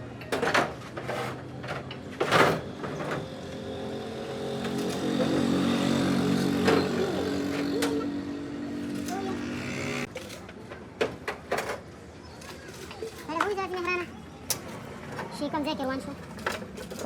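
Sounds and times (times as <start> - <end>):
motor hum: 3.0 - 10.1.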